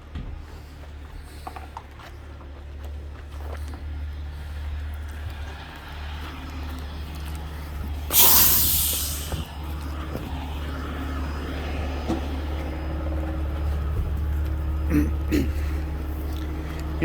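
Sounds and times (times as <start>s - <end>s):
diesel engine running: 0.0s - 17.0s
air brakes hissing: 8.1s - 9.6s.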